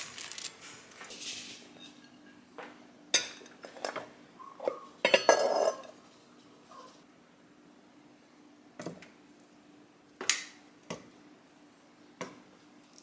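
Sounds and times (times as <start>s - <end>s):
utensils and dishes clinking: 0.0s - 2.4s, 3.2s - 6.0s.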